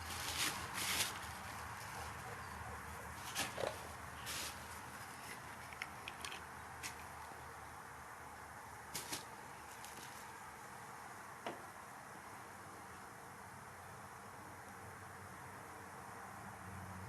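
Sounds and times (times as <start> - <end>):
scraping or rustling: 0.0 - 2.0, 3.2 - 7.1
small clicks: 5.6 - 7.1.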